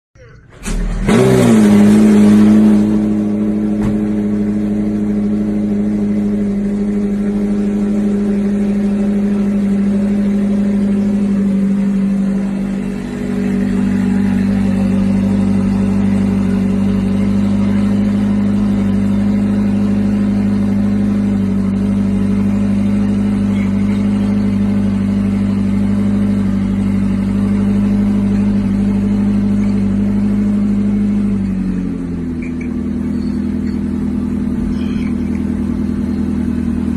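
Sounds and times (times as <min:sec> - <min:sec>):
car engine idling: 0:00.2 - 0:36.9.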